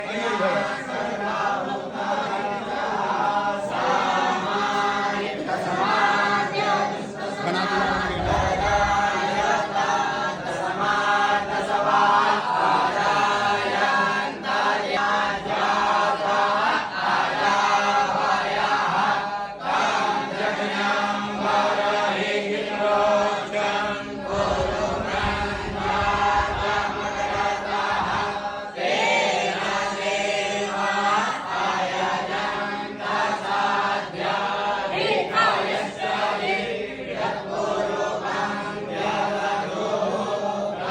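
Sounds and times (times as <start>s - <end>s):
group chanting in unison: 0.0s - 40.9s.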